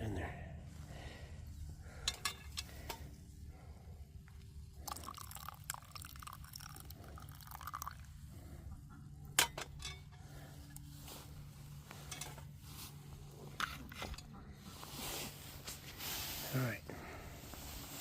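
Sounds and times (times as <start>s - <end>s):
tea pouring into a cup: 4.8s - 8.2s.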